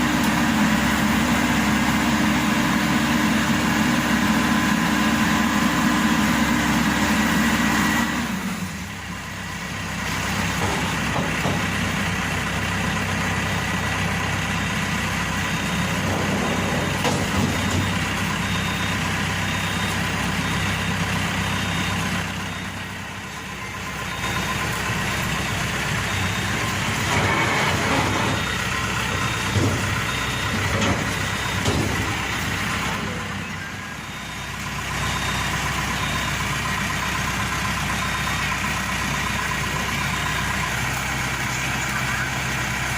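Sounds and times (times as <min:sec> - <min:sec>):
combine harvester engine running: 0:00.0 - 0:42.9.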